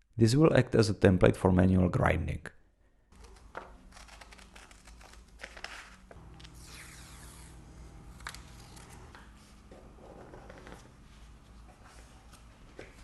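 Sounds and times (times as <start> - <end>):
paper rustling and crinkling: 3.2 - 7.0.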